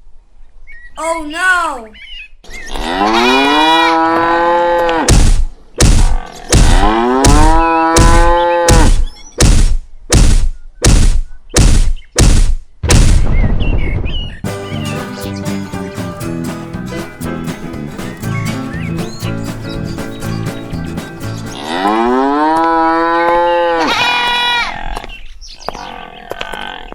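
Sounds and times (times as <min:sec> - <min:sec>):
cow mooing: 0:02.8 - 0:05.0
short loud knocks: 0:05.1 - 0:13.5.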